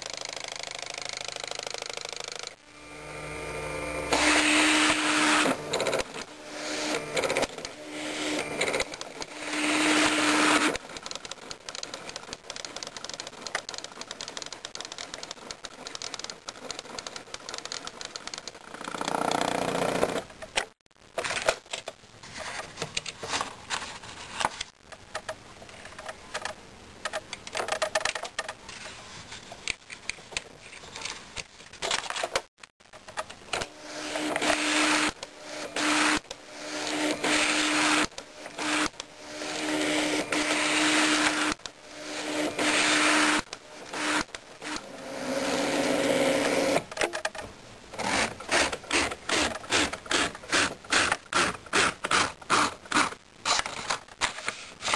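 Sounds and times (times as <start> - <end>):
plotter motors buzzing and ticking: 0.1 - 10.8
plotter whirring: 1.8 - 10.8.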